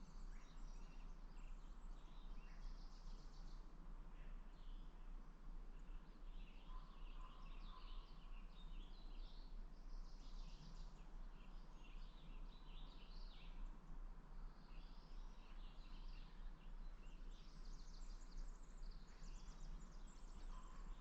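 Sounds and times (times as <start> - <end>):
small birds chirping: 5.7 - 21.0.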